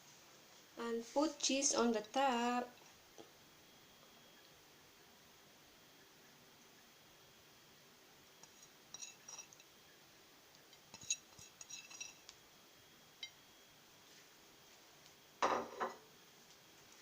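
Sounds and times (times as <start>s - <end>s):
metal utensil clinking on dish: 8.4s - 9.7s, 10.7s - 12.2s.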